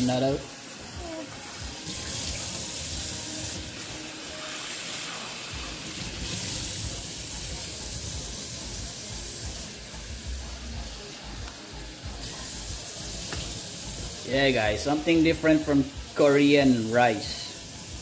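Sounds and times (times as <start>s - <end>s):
tap running into sink: 13.2s - 13.6s.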